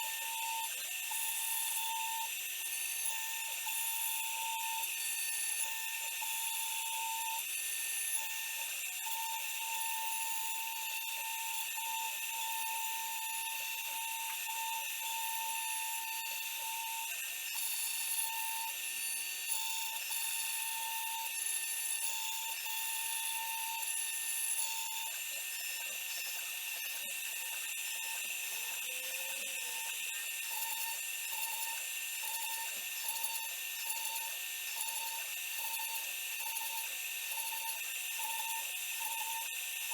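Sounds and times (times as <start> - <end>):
axis motors humming tone: 24.5 - 39.6.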